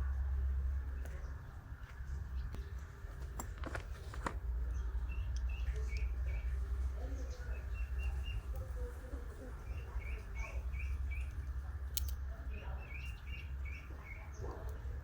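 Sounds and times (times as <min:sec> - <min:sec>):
steady low rumble: 0:00.0 - 0:15.0
bird chirping: 0:04.6 - 0:15.0.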